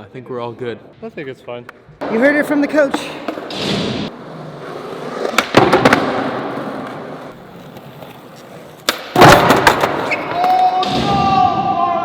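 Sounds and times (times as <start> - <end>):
skateboard wheels rolling: 2.4 - 11.4
skateboard clacks: 5.0 - 8.0, 8.8 - 11.1.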